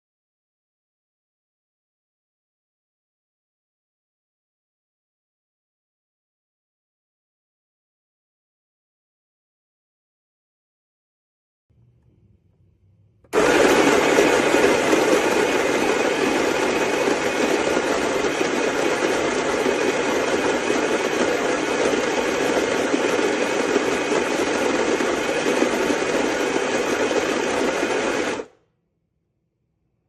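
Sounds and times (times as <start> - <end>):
electric coffee grinder grinding: 13.3 - 28.5.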